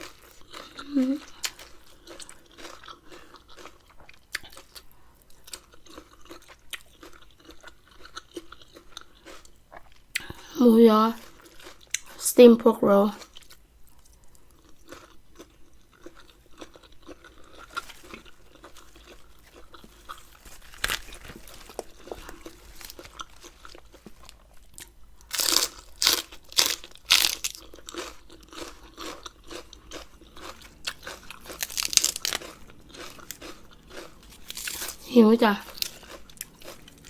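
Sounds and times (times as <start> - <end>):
crunching bites: 14.9 - 37.0.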